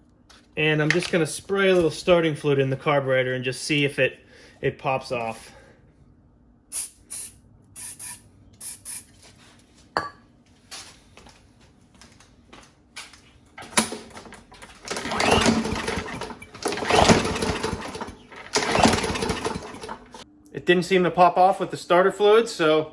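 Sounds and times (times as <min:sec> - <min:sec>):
recoil starter pulls cranking engine: 0:13.6 - 0:20.2.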